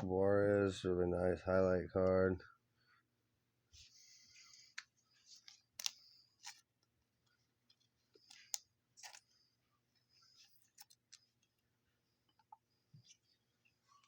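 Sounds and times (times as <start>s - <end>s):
trading cards rustling: 3.9s - 11.6s
cards clicking while flipped: 4.7s - 6.7s.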